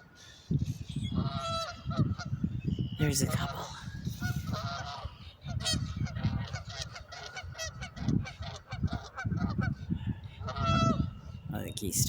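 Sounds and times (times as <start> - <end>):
geese honking: 1.1 - 2.3, 3.1 - 11.2.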